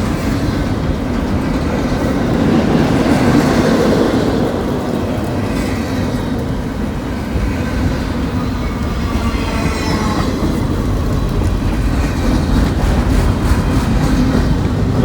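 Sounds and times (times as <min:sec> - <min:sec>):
train wheels rumbling on rail: 0:00.0 - 0:15.0.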